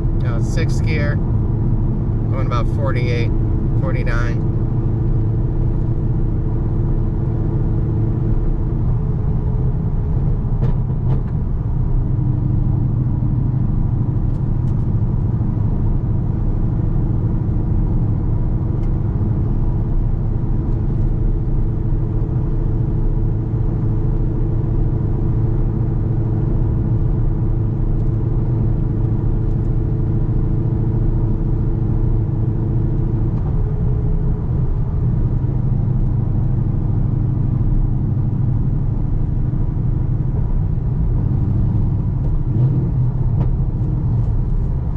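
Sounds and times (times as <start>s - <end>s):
car engine droning: 0.0s - 44.9s.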